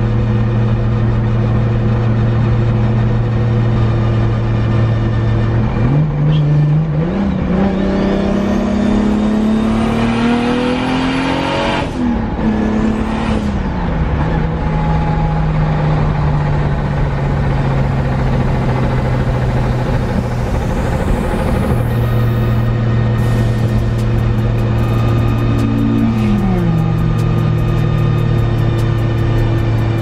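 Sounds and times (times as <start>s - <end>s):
car engine accelerating: 0.0s - 30.0s.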